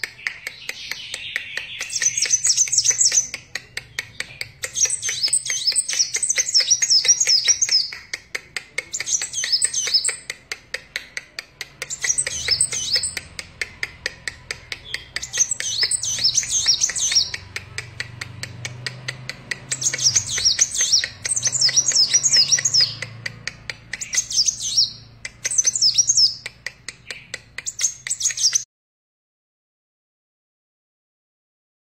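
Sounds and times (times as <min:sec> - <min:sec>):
bird sharp ticks: 0:00.0 - 0:28.6
sunbird twittering chirps: 0:15.2 - 0:17.4, 0:19.7 - 0:23.0, 0:24.0 - 0:26.4.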